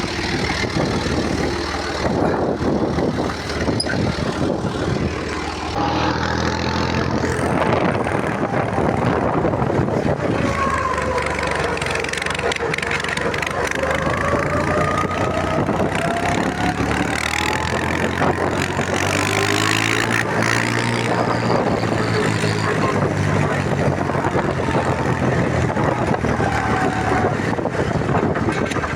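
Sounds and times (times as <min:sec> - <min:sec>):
tractor diesel engine running: 0:00.0 - 0:28.9.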